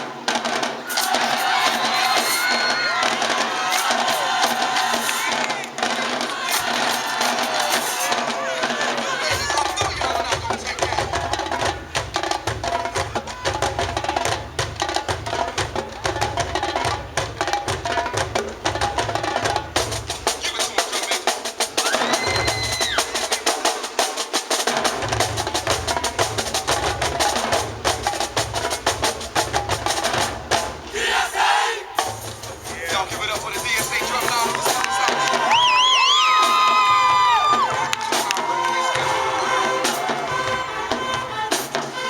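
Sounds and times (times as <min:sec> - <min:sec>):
snare drum strokes: 0:00.0 - 0:42.0.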